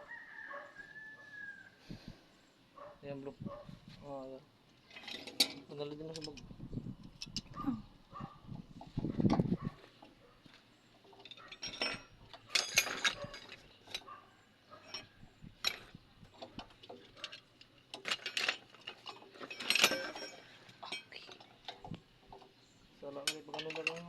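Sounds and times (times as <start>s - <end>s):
metallic clinks of hand tools: 18.0s - 21.5s, 23.2s - 24.0s.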